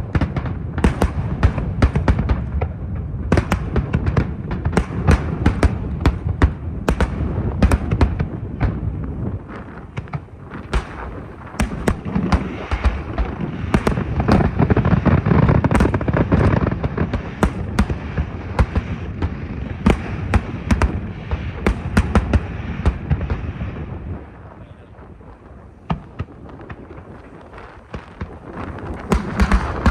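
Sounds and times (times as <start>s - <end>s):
fireworks bangs: 3.3s - 24.6s, 25.2s - 29.9s
low rumble: 10.3s - 14.8s.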